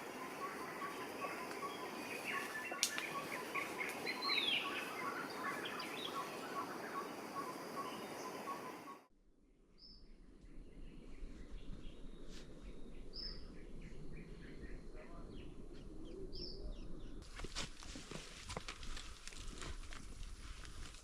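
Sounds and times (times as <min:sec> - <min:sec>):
steady background hiss: 0:00.0 - 0:09.0
forest birds chirping: 0:00.0 - 0:09.1.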